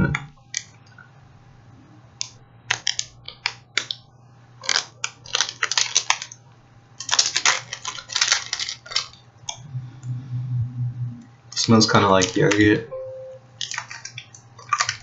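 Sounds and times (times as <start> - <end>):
plastic wrapper crinkling: 4.6 - 6.4, 7.0 - 9.2, 13.6 - 15.0.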